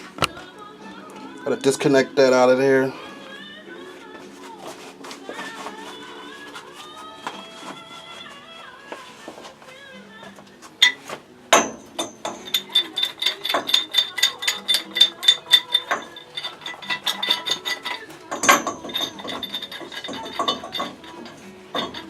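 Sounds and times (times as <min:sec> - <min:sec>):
metal clatter: 0:10.8 - 0:22.0
ratchet wrench clicking: 0:12.0 - 0:22.0.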